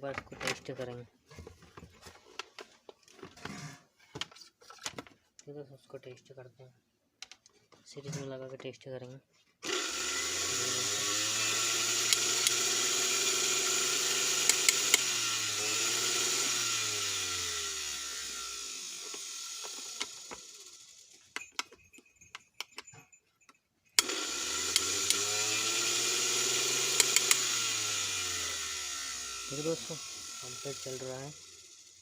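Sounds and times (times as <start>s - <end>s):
mixer grinder motor whining: 9.6s - 21.1s, 24.0s - 32.0s
clicks: 27.0s - 27.5s.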